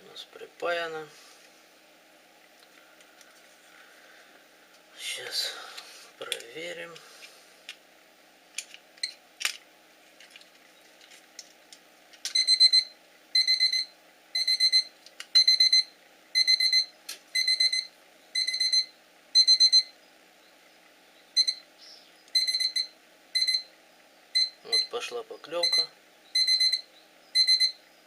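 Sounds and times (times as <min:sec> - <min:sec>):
quick high alarm beeps: 0:25.6 - 0:27.8.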